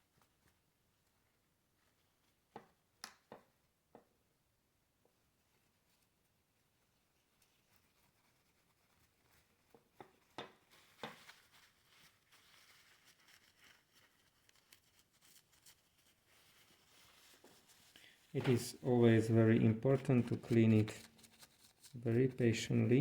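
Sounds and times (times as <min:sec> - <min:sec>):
rubbing and scraping circuit board: 0:18.5 - 0:22.3.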